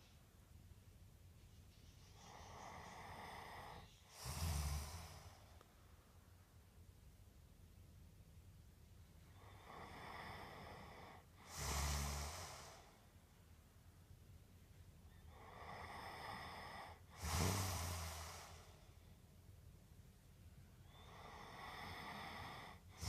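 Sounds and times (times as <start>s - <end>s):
person snoring breathing: 2.2s - 5.6s, 9.4s - 13.1s, 15.2s - 18.9s, 20.8s - 23.0s.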